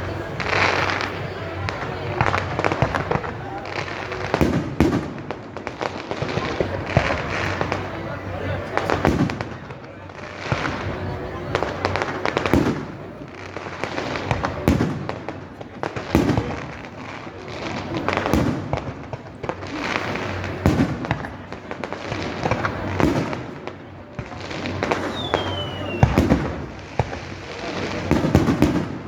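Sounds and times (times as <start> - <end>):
fireworks booming: 0.0 - 29.0
fireworks crackling: 0.0 - 29.0
falling firework whistle: 24.8 - 26.9.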